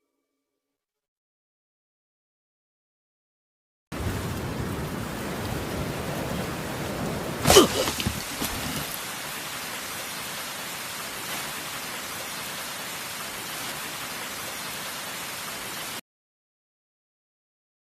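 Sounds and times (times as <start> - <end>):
heavy rain: 3.9 - 16.0.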